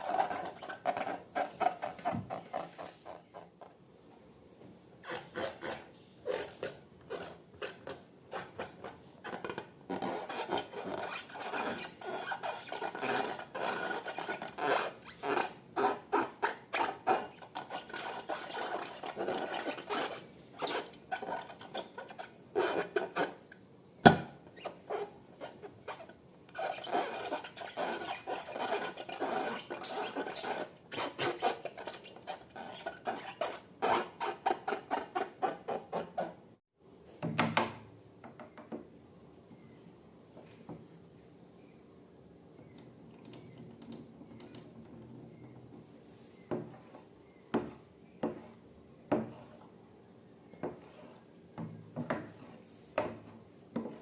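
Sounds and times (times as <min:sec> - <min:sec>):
sticky slime rubbing strokes: 0:10.1 - 0:23.4, 0:24.6 - 0:36.2.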